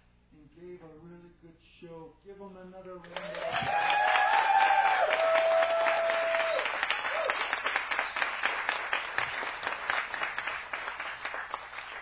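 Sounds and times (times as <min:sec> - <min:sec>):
audience applause: 0:03.1 - 0:12.0.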